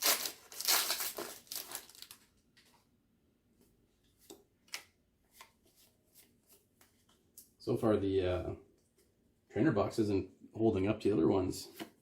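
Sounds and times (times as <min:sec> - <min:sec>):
foil wrapper rustling: 0:00.0 - 0:02.3.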